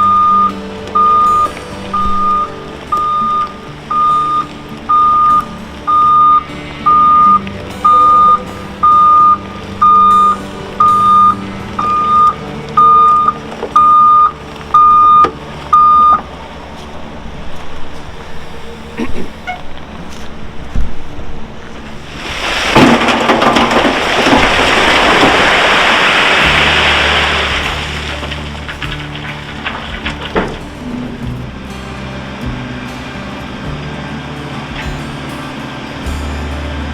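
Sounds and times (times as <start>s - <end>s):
reversing alarm beeping: 0.0s - 16.3s
diesel engine running: 0.0s - 36.9s.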